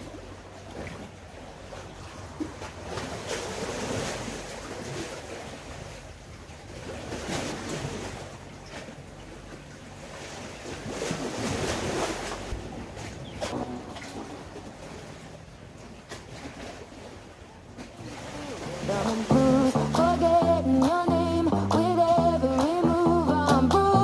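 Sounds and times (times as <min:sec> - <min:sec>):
sea waves washing in: 0:09.9 - 0:24.0.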